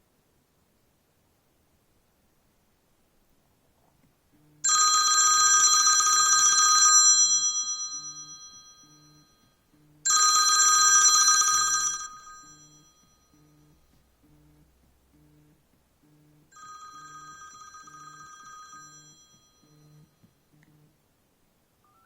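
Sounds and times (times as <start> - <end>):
faint low pulsing buzz: 0.0 - 4.7, 8.0 - 10.1, 11.5 - 22.0
phone ringtone trilling: 4.6 - 13.8, 16.5 - 20.2.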